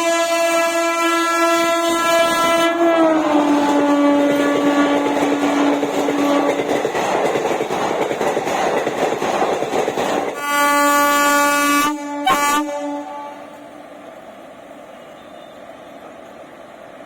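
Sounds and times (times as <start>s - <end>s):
locomotive horn: 0.0s - 6.6s, 10.4s - 13.7s
train rumble: 0.0s - 17.0s.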